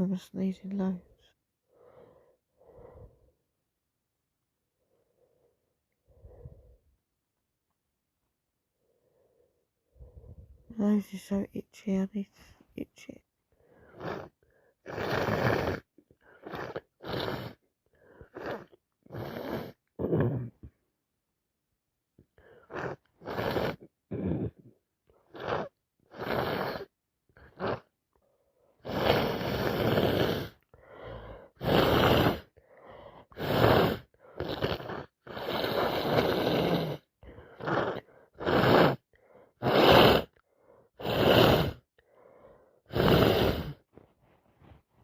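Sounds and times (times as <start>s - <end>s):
gasping in-breaths: 1.7s - 3.4s, 4.8s - 6.9s, 8.8s - 10.7s, 13.5s - 19.9s, 26.6s - 44.8s.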